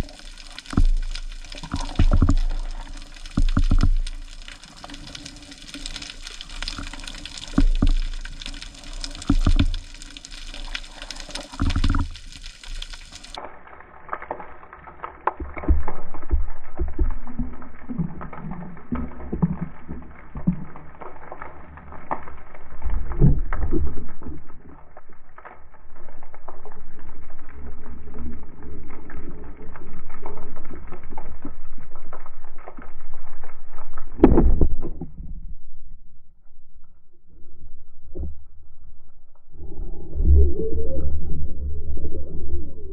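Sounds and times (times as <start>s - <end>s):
muffled underwater ambience: 0.0s - 42.9s
knocks and scrapes: 0.5s - 4.6s, 6.4s - 12.3s.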